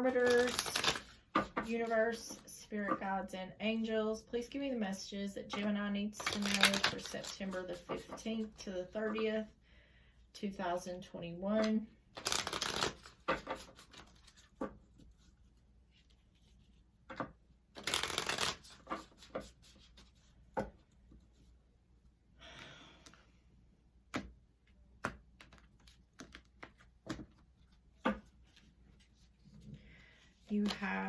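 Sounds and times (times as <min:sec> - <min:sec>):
cards being shuffled: 0:00.0 - 0:03.0, 0:06.2 - 0:08.5, 0:12.2 - 0:15.3, 0:16.0 - 0:20.7, 0:25.0 - 0:29.6, 0:30.4 - 0:31.0.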